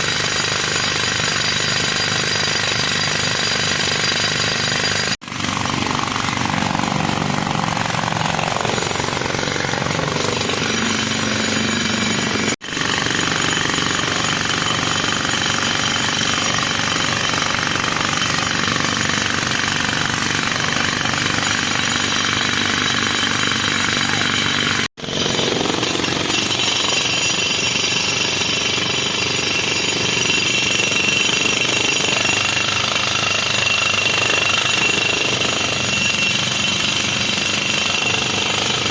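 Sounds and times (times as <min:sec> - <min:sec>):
excavator diesel engine working: 0:05.2 - 0:20.3.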